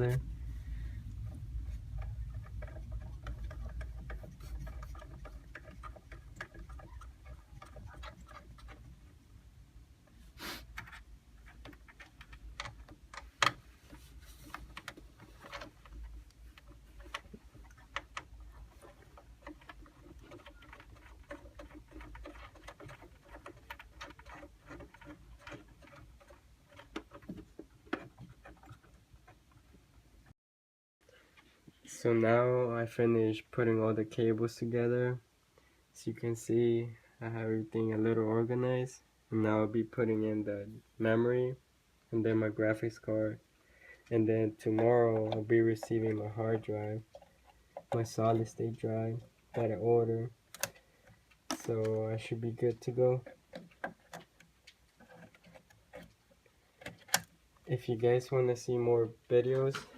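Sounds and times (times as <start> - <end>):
clicks and taps on computer parts: 56.8 - 57.4.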